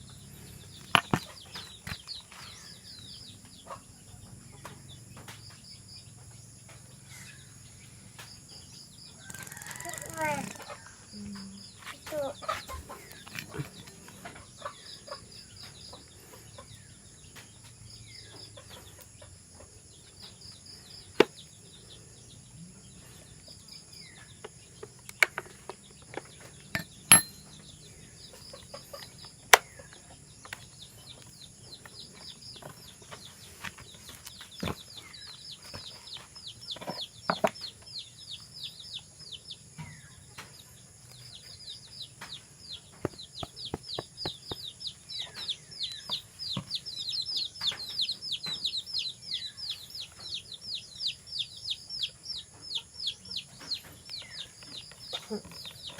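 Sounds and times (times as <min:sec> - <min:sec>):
chickens clucking: 0:00.0 - 0:08.4, 0:09.2 - 0:26.6, 0:27.5 - 0:55.9
small birds chirping: 0:00.0 - 0:55.9
sharp metallic clinks: 0:26.7 - 0:27.8.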